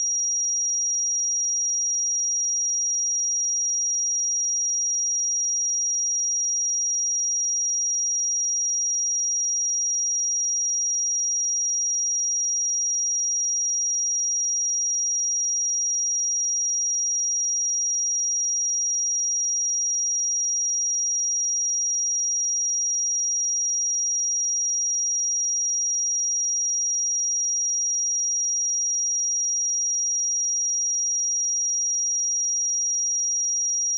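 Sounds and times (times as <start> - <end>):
high-pitched sine test tone: 0.0 - 1.7, 18.2 - 33.9.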